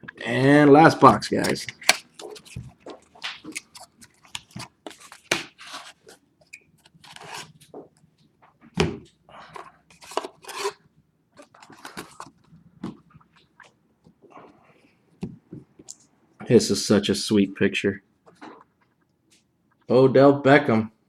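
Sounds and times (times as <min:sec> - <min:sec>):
packaging crinkling and tearing: 0:01.4 - 0:06.2.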